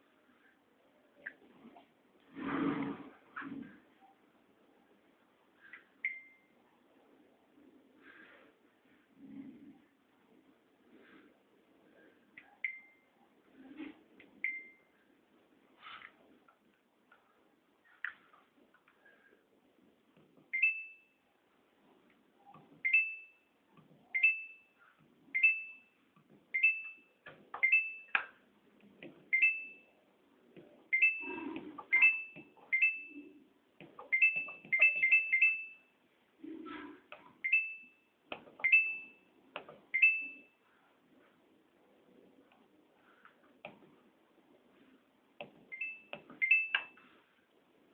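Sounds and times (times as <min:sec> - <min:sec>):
control panel beeping: 0:12.6 - 0:13.0, 0:14.4 - 0:14.8, 0:26.6 - 0:28.3, 0:29.3 - 0:29.9, 0:30.9 - 0:33.4, 0:34.0 - 0:35.8, 0:38.6 - 0:39.2, 0:45.7 - 0:47.0.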